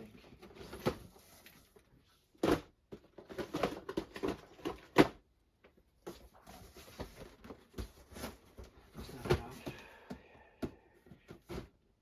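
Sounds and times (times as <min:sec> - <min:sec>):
cardboard rustling: 0:06.0 - 0:09.8.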